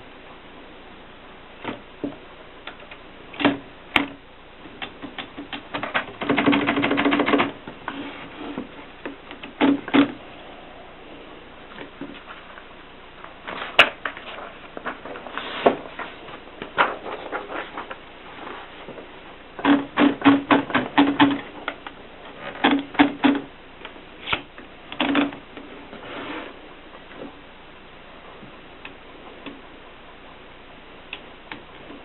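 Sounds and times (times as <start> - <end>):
typewriter keys clacking: 5.2 - 7.5.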